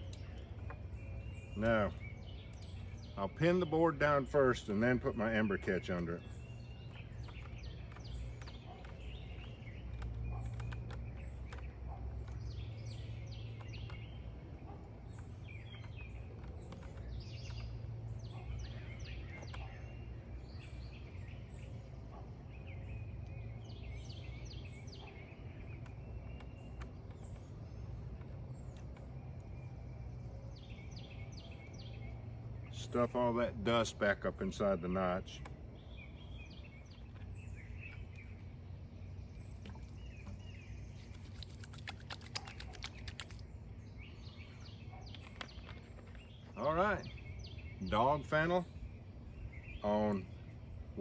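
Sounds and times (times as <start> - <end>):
bird song: 0.0 - 51.0
small clicks and rustles: 5.9 - 19.8, 25.6 - 29.6, 39.4 - 43.5, 44.3 - 46.5.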